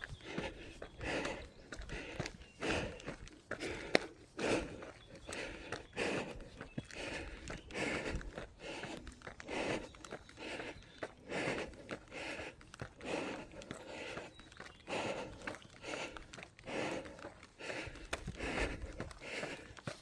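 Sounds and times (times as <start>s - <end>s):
footsteps on a path: 0.0s - 20.0s
heavy rhythmic breathing: 0.0s - 20.0s.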